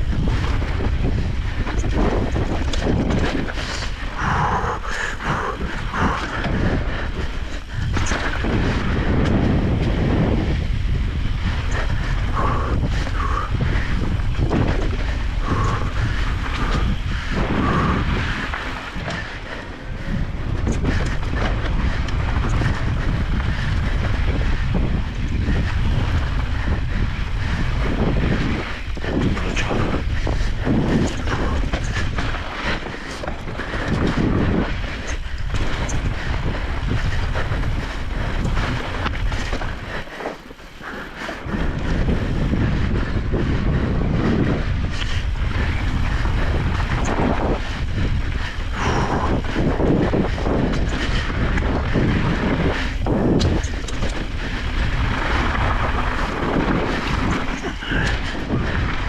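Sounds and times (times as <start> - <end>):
tyre and trail noise: 0.0 - 59.0
wind buffeting microphone: 0.0 - 59.0.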